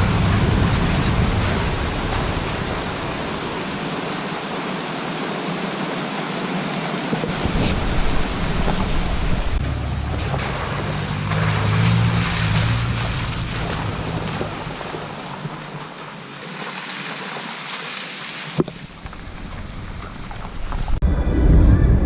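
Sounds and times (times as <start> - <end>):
river water rushing: 0.0 - 20.0
wind buffeting microphone: 7.2 - 15.8.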